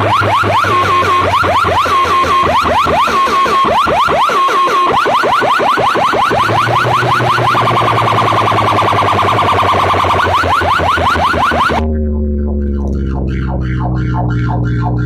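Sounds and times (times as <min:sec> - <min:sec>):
siren effect through loudspeakers: 0:00.0 - 0:15.0
low hum: 0:07.7 - 0:15.0.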